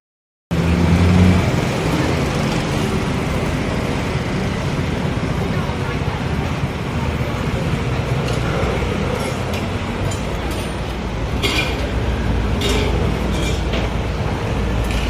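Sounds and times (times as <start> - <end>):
street traffic rumble: 0.5 - 15.0
tableware clinking: 9.2 - 14.0.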